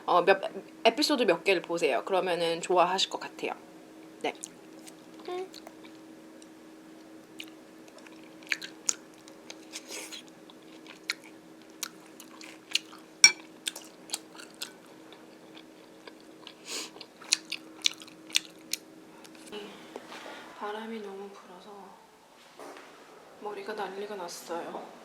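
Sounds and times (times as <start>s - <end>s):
faint steady hum: 0.0s - 25.0s
person chewing crunchy food: 7.3s - 19.5s.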